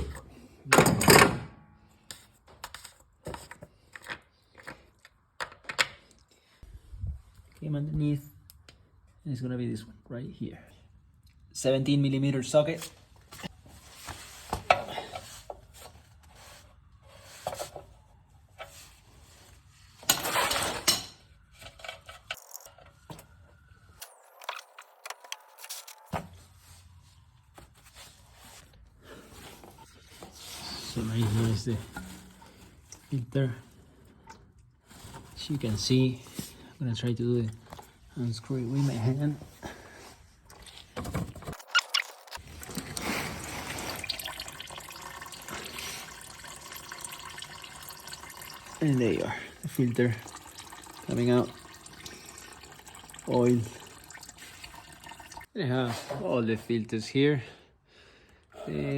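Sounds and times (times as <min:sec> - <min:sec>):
oil running and dripping: 0:42.4 - 0:55.5.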